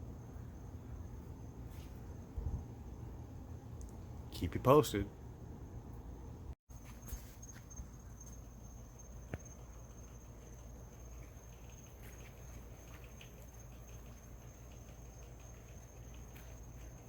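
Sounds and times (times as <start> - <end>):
crickets trilling: 6.7 - 17.0.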